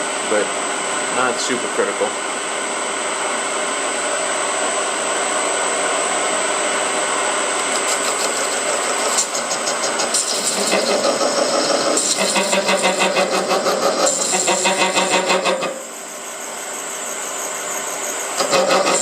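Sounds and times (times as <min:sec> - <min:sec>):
metal lathe whining: 0:07.7 - 0:19.0.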